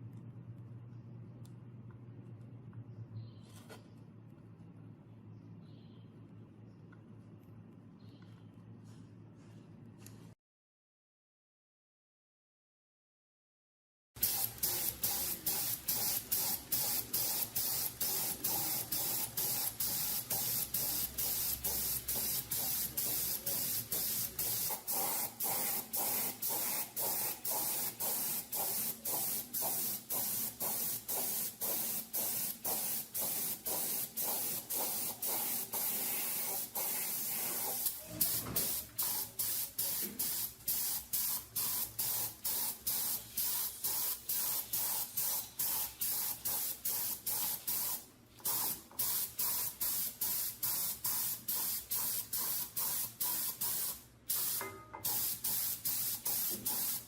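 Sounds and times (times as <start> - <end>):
paint spraying hiss: 14.2 - 57.0.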